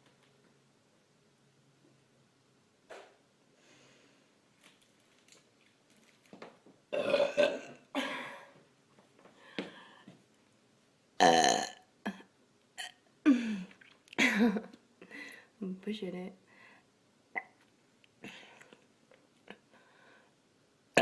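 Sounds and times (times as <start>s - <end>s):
woman burping loudly: 6.9s - 8.4s, 11.2s - 14.6s.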